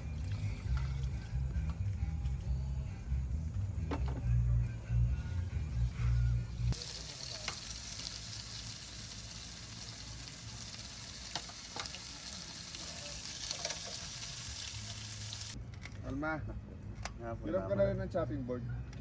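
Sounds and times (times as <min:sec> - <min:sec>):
music: 0:00.0 - 0:07.6, 0:12.0 - 0:19.0
food sizzling in a pan: 0:06.7 - 0:15.6.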